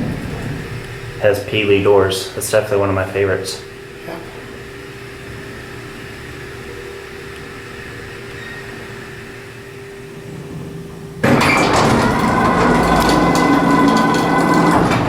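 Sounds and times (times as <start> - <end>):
loud mechanical clattering rumble: 0.0 - 5.9, 8.8 - 15.0
freight elevator hum: 0.0 - 15.0.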